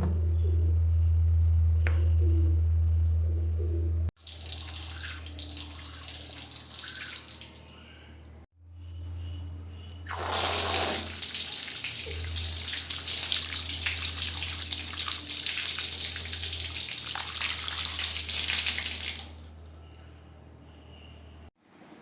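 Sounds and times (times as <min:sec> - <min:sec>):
low hum: 0:00.0 - 0:04.1, 0:07.7 - 0:10.4
water running from tap: 0:04.2 - 0:07.7, 0:10.1 - 0:19.8.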